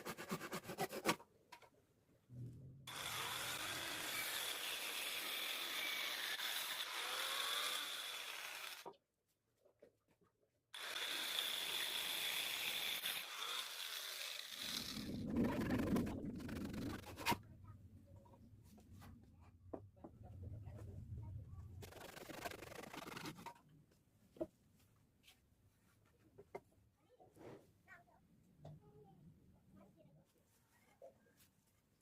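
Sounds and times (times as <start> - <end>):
power tool whine: 2.9 - 8.9, 10.8 - 15.2.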